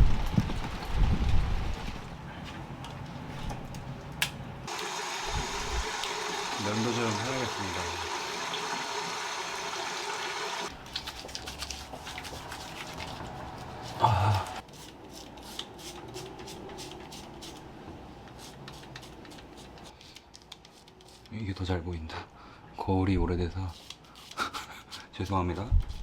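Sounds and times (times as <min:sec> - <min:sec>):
electric shaver buzzing: 0:04.7 - 0:10.7.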